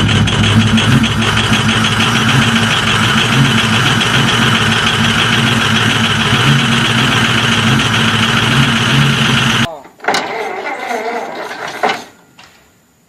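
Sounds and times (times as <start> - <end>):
big engine running loudly: 0.0 - 9.7.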